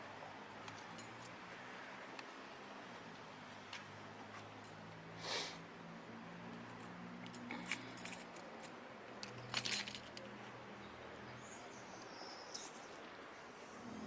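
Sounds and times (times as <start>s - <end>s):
metal jingling and clinking: 0.4s - 4.8s, 6.7s - 10.5s, 12.5s - 13.0s.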